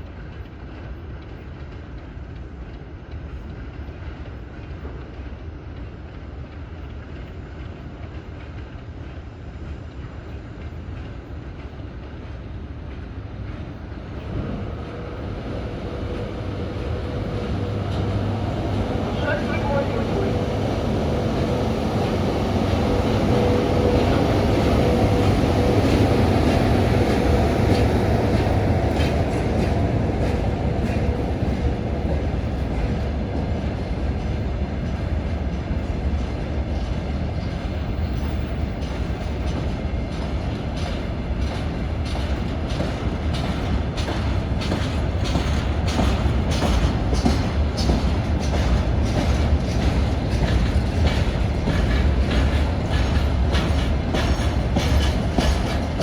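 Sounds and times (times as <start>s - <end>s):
freight train rumbling: 0.0s - 56.0s
wheels clicking over rail joints: 37.4s - 56.0s.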